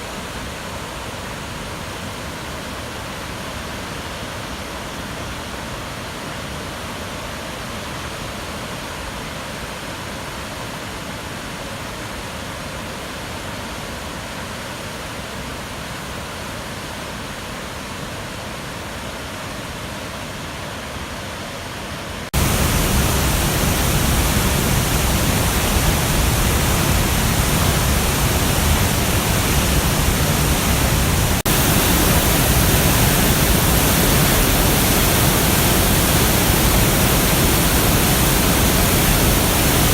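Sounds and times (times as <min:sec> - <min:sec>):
floodwater rushing: 0:22.3 - 0:39.9.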